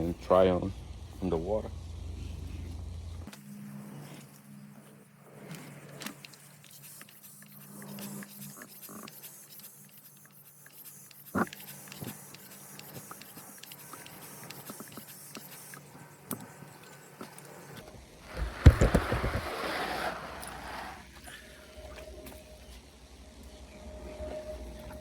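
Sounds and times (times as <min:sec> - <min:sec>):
low steady hum: 0:00.0 - 0:05.5.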